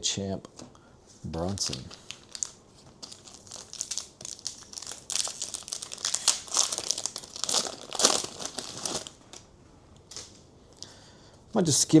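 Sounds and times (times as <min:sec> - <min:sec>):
plastic wrapper crinkling: 0:01.4 - 0:09.5.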